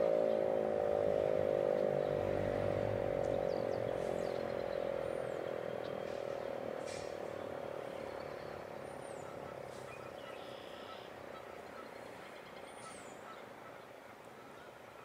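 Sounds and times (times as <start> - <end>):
mechanical siren low tone: 0.0 - 6.8
high bird chirps: 3.4 - 13.5.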